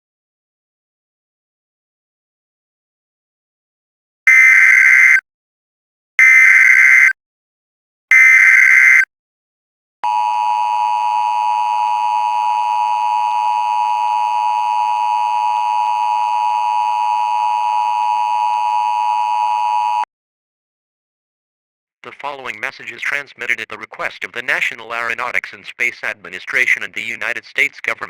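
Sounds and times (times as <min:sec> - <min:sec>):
two-tone attention signal: 0:10.0 - 0:20.0.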